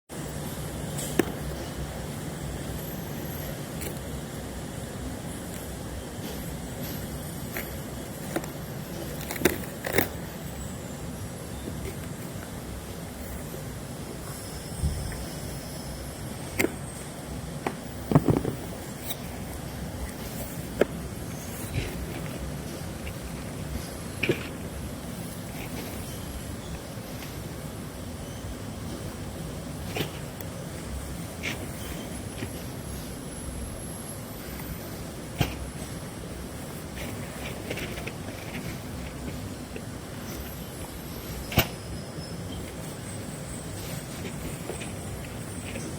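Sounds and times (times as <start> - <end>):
steady background noise: 0.1 - 45.9
steady low hum: 0.1 - 45.9.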